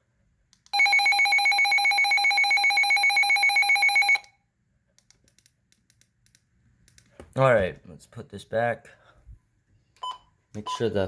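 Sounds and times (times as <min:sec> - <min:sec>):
shrill pulsing alarm tone: 0:00.8 - 0:04.2.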